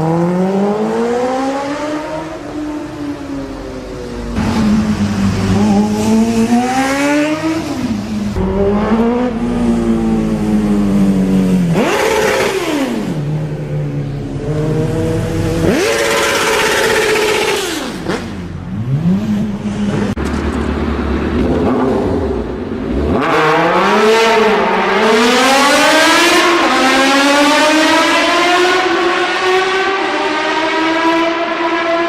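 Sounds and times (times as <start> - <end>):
motorcycle engine revving high: 4.0 - 20.1.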